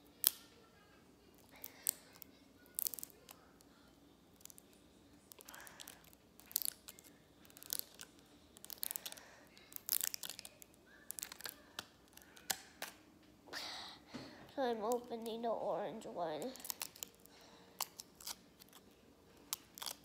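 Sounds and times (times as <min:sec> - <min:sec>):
plastic packaging crinkling and tearing: 0:05.3 - 0:13.0, 0:16.4 - 0:20.0.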